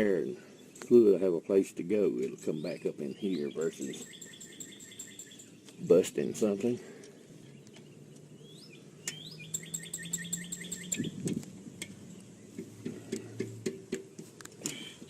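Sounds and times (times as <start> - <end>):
songbird chirping: 0.0 - 13.2
sharp clicks and knocks: 12.6 - 14.8.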